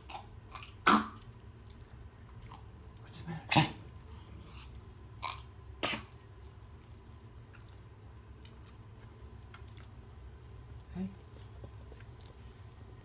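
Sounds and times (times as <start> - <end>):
pet coughing: 0.1 - 1.2, 5.2 - 6.2.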